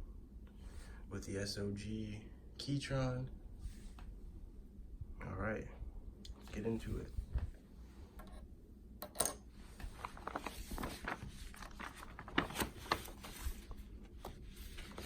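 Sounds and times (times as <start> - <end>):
packaging rustling and scraping: 9.7 - 15.0.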